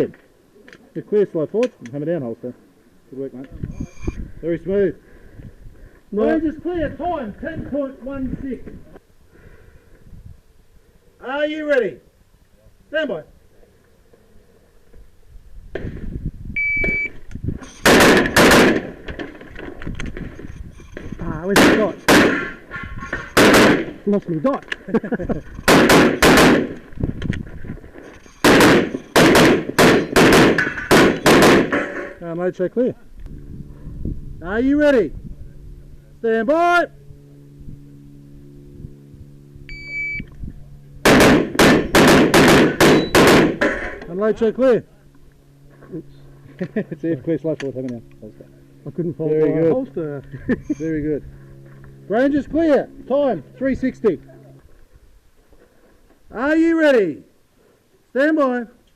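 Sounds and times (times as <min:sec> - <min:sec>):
shot timer start beep: 0:16.6 - 0:17.1, 0:39.7 - 0:40.3, 0:42.9 - 0:43.2
pistol shots: 0:17.8 - 0:19.0, 0:21.6 - 0:22.6, 0:23.3 - 0:24.0, 0:25.7 - 0:26.8, 0:28.4 - 0:32.1, 0:41.0 - 0:43.9.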